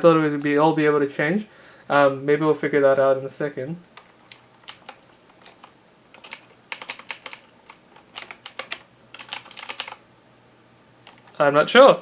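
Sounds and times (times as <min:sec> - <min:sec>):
clicky mechanical keyboard typing: 0:04.0 - 0:10.0, 0:11.0 - 0:11.4.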